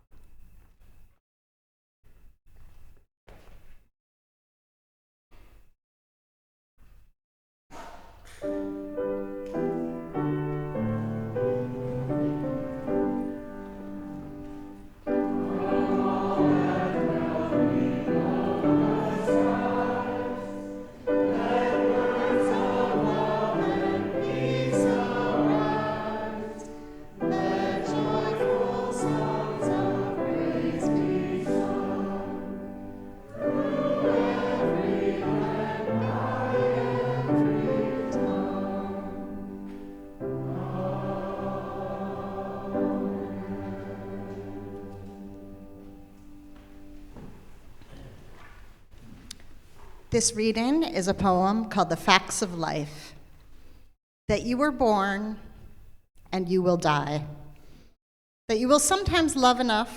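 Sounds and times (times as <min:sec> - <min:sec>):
musical accompaniment: 0:08.5 - 0:47.6
choir singing a hymn: 0:08.6 - 0:46.7.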